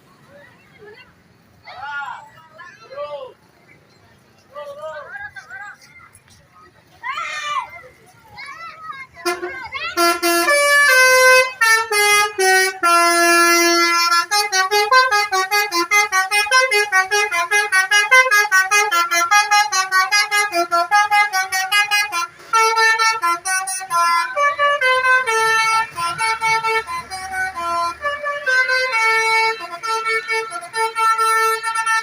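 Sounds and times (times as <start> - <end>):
musical bus horn melody: 9.2 - 32.0.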